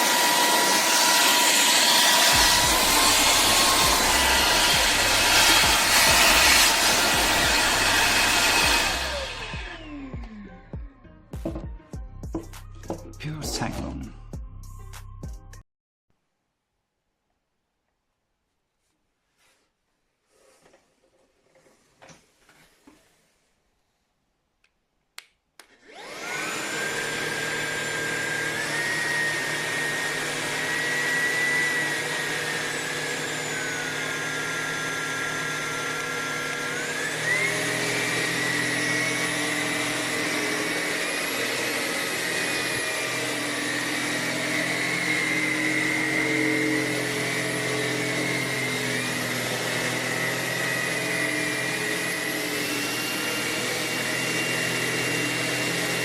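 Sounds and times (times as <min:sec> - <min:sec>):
vacuum motor whine: 0:00.0 - 0:10.6, 0:25.8 - 0:56.0.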